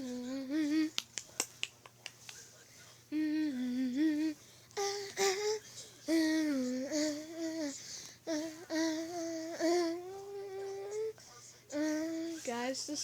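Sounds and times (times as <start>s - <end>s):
person humming: 0.0s - 1.0s, 3.1s - 12.4s.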